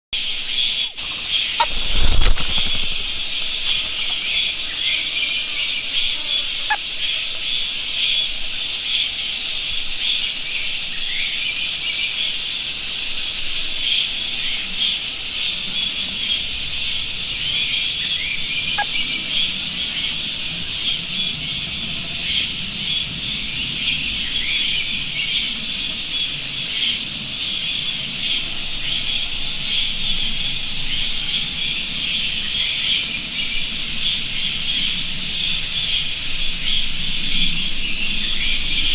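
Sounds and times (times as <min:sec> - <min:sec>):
small birds chirping: 0:00.7 - 0:04.8.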